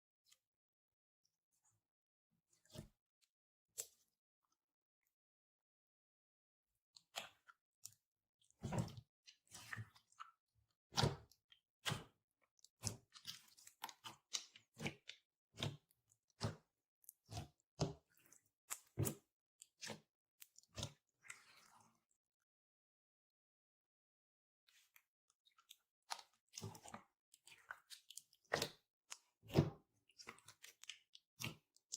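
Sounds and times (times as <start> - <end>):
slime squishing: 25.6 - 31.9.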